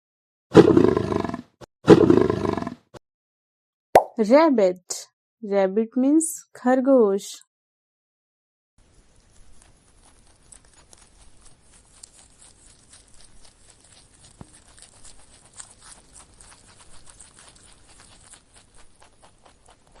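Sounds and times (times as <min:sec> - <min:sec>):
rabbit crunching and rustling: 0:08.8 - 0:20.0.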